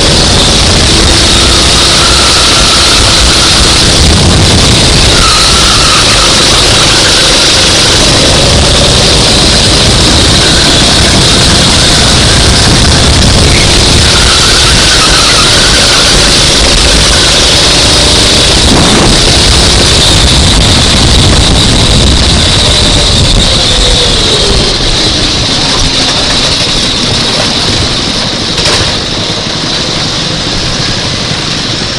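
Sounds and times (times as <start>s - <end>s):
kart engine running: 0.0s - 31.9s.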